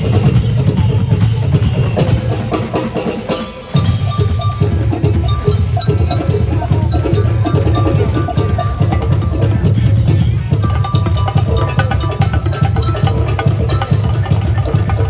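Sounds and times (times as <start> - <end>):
deep drums: 0.0 - 15.0.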